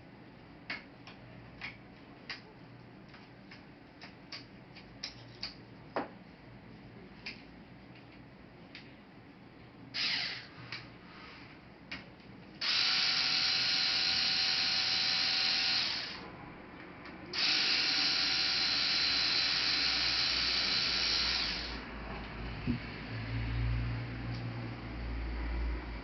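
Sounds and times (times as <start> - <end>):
electric screwdriver motor whine: 10.0 - 10.5, 12.6 - 16.2, 17.4 - 21.8.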